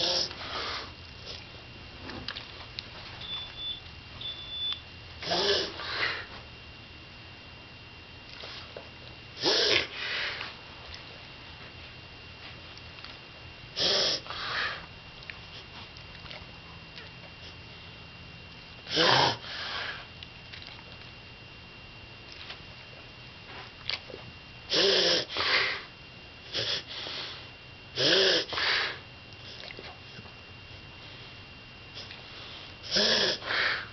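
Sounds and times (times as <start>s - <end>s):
pet coughing: 9.4s - 9.9s.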